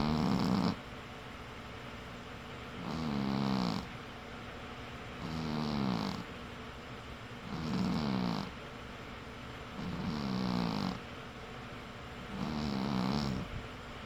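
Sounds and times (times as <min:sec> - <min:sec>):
cat snoring: 0:00.0 - 0:00.8, 0:02.8 - 0:03.9, 0:05.2 - 0:06.3, 0:07.4 - 0:08.6, 0:09.8 - 0:11.0, 0:12.3 - 0:13.6.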